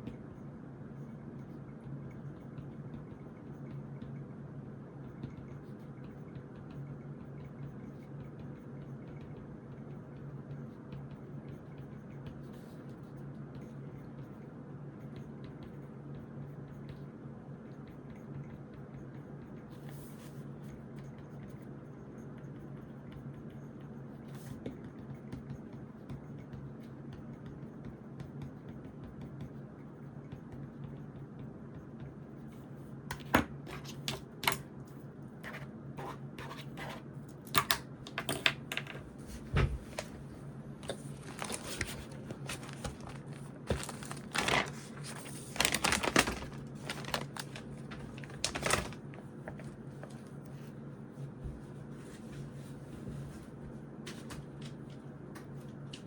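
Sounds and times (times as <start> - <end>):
low room hum: 0.0 - 56.0
paper rustling: 39.2 - 50.4.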